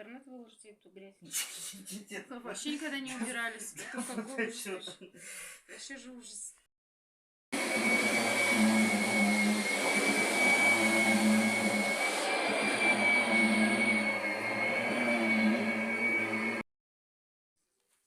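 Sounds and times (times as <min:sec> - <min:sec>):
vacuum cleaner motor whine: 0:07.6 - 0:16.6.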